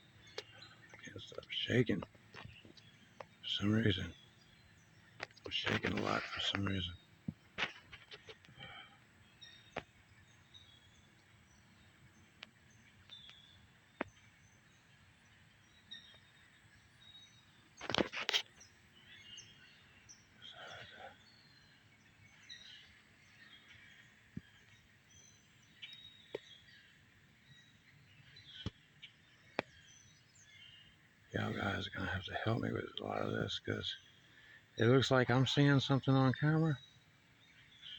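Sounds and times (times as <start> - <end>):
faint bird chirps: 0.0 - 37.9
brief rustling: 17.8 - 18.5.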